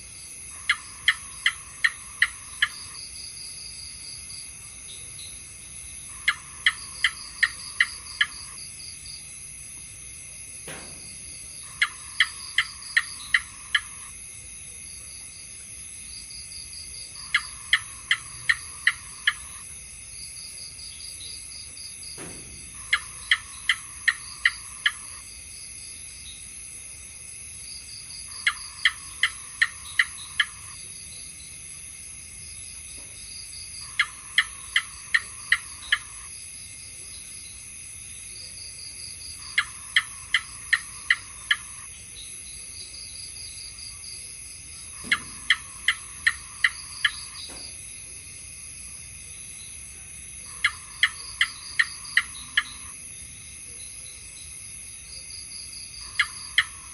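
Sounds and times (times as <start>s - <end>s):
cricket drone: 0.0s - 56.9s
gecko chirping: 0.5s - 3.1s, 6.1s - 8.6s, 11.6s - 14.1s, 17.2s - 19.7s, 22.8s - 25.2s, 28.3s - 30.8s, 33.8s - 36.3s, 39.4s - 41.9s, 44.8s - 47.6s, 50.4s - 53.0s, 56.0s - 56.9s.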